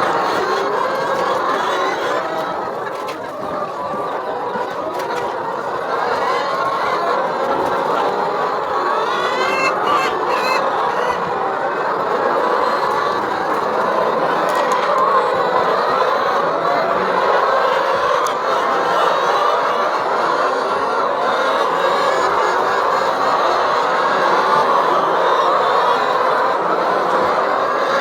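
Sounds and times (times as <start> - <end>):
chicken rising call: 0.0 - 28.0
flock of chickens clucking: 0.0 - 28.0.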